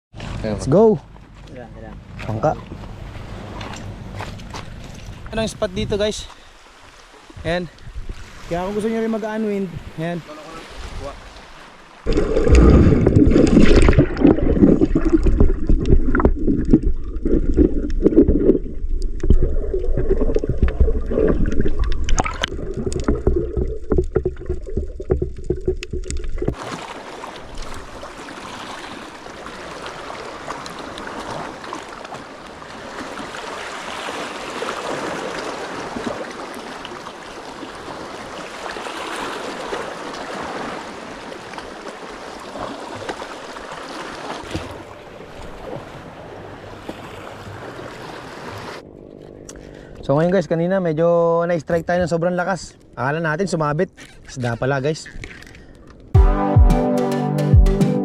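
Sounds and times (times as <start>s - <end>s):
rushing water and waves: 0.1s - 50.0s
gusting wind rumble: 7.4s - 8.8s.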